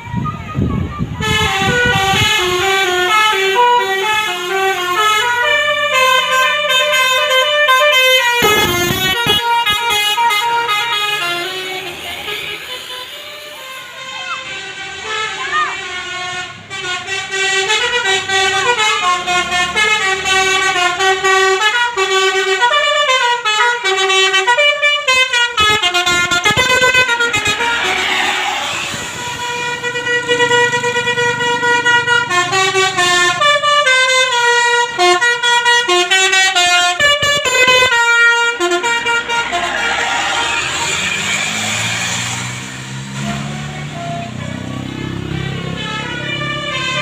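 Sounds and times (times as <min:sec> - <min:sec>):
multi-trumpet horn playing a tune: 0:01.2 - 0:27.9
rush of noise: 0:27.1 - 0:29.7, 0:39.0 - 0:43.6.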